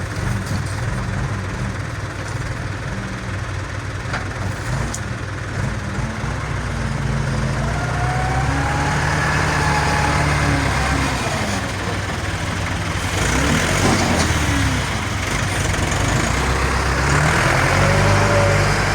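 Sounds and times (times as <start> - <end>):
large engine revving: 4.2 - 18.9.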